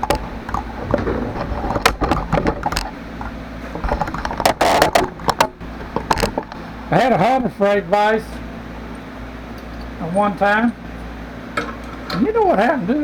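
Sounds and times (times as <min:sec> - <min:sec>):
noisy rattle: 0:00.0 - 0:07.4
fan humming: 0:00.0 - 0:13.0.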